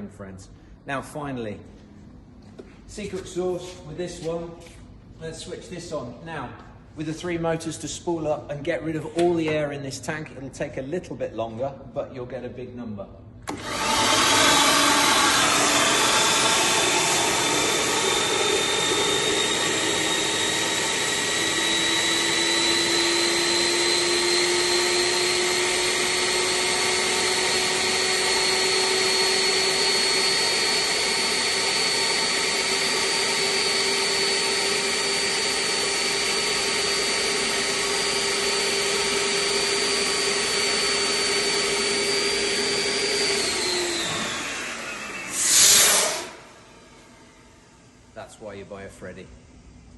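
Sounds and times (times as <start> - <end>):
vacuum cleaner whining: 13.4 - 48.1.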